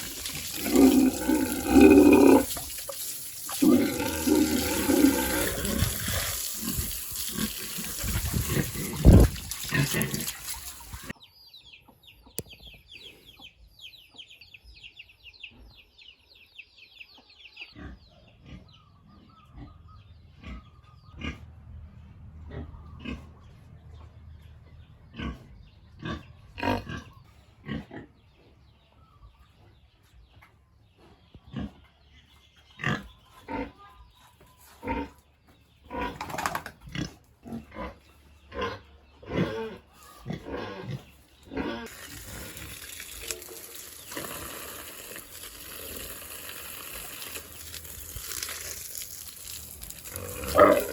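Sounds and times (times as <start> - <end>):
pigs squealing and grunting: 0.0 - 11.1, 26.0 - 28.1, 35.9 - 50.9.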